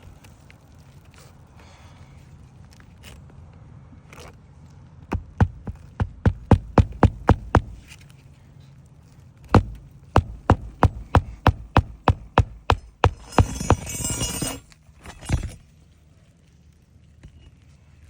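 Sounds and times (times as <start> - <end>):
scraping on shingles: 5.0 - 8.2, 9.4 - 15.8
hammer striking nails: 5.1 - 8.0, 9.5 - 14.6.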